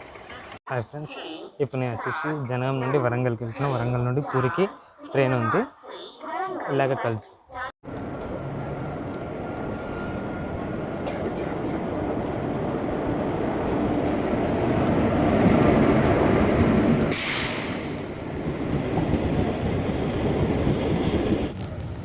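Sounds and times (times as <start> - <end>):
train wheels rumbling on rails: 7.8 - 22.0.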